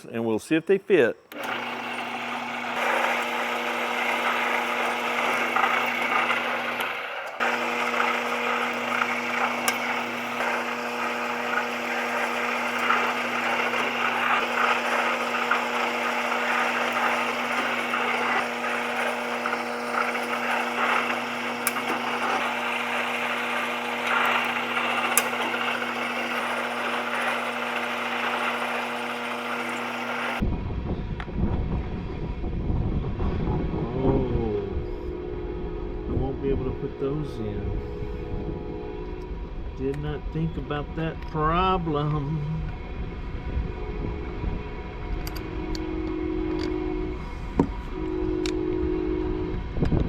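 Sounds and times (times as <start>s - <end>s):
power drill drilling: 1.3s - 30.4s.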